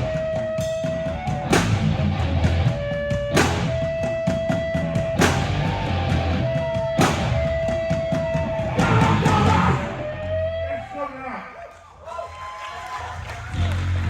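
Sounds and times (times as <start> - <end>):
distorted electric guitar: 0.0 - 10.7
heavy rock band playing: 0.0 - 10.7.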